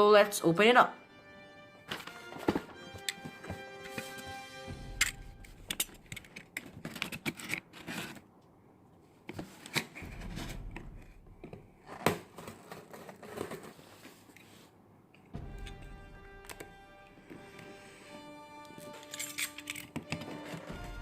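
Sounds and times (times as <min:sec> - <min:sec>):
knife cutting box tape: 0:18.8 - 0:20.7.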